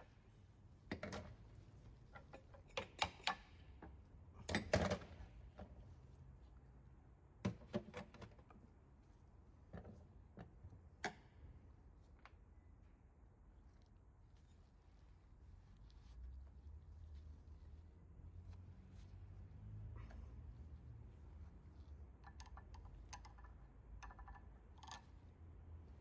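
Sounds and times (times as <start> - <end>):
tools clicking and knocking on workbench: 2.2 - 3.5.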